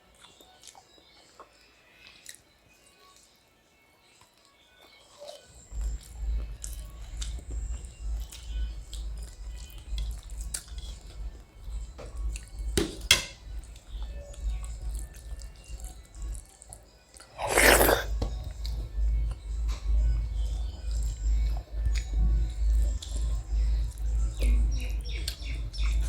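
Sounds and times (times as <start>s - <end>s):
music with pulsing beat: 5.5s - 16.9s, 18.1s - 26.0s
chewing mouth sounds: 17.2s - 18.8s.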